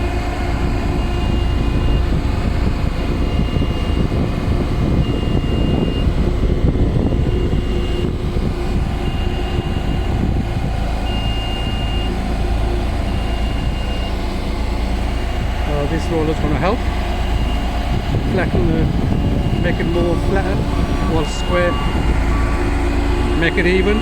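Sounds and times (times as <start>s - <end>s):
roller engine low rumble: 0.0s - 24.0s
short high warning beep: 18.4s - 22.6s.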